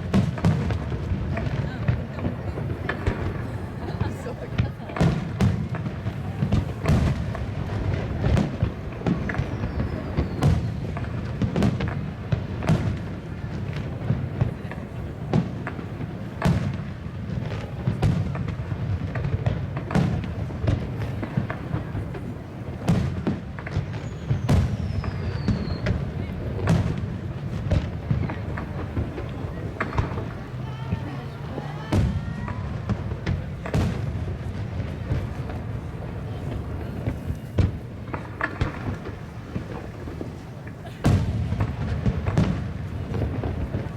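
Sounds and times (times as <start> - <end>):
fireworks bursting with bangs: 0.0 - 43.9
falling firework whistles: 8.5 - 11.2, 23.6 - 27.1.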